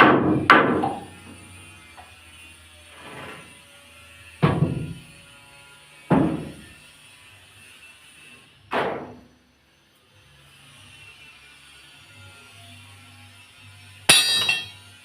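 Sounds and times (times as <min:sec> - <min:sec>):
loud wooden knocks: 0:04.4 - 0:05.0, 0:06.1 - 0:06.6.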